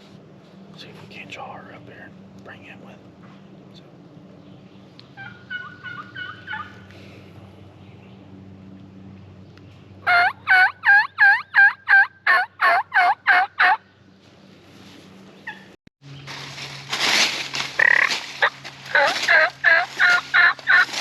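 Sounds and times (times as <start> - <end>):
turkey yelping: 5.2 - 6.8, 10.0 - 13.8, 17.8 - 21.0.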